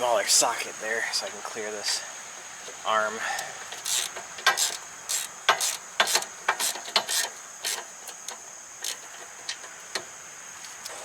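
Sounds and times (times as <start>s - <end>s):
ratchet wrench clicking: 3.4s - 9.1s.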